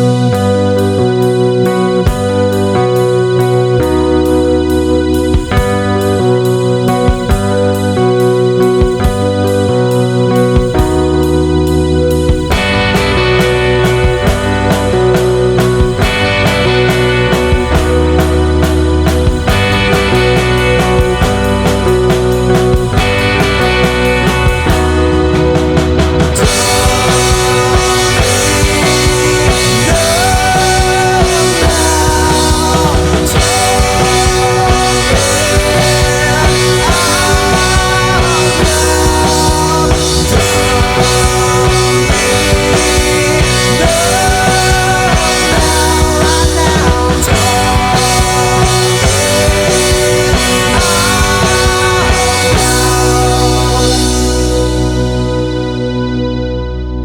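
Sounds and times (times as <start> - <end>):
psychedelic rock band: 0.0 - 57.0
sliding lead melody: 0.0 - 57.0.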